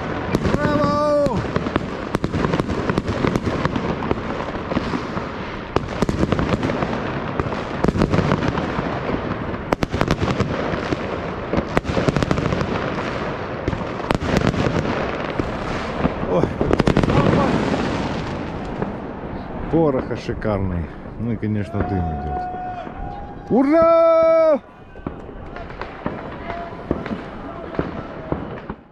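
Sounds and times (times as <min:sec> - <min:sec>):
fireworks banging and crackling: 0:00.0 - 0:28.9.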